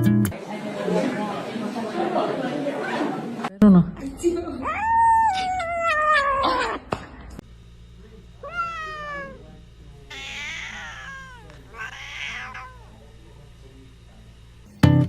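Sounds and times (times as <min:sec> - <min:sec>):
cat meowing: 0:04.6 - 0:06.9, 0:08.4 - 0:09.4, 0:10.1 - 0:13.0.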